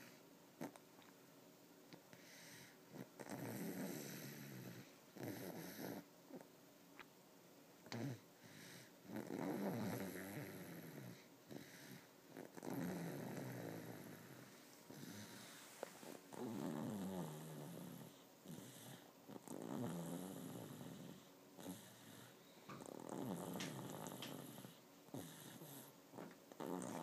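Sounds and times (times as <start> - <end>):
child snoring loudly: 3.2 - 6.1, 9.1 - 15.5, 16.3 - 27.0.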